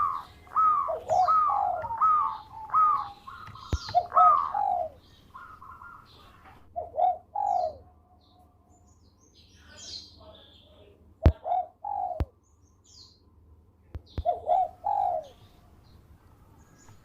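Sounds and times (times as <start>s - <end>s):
dove cooing: 0.0s - 7.9s, 11.2s - 12.4s, 14.1s - 15.8s.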